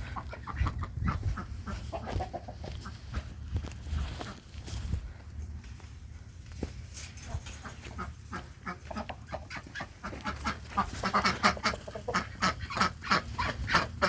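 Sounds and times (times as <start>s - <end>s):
flock of waterfowl calling: 7.6s - 14.0s.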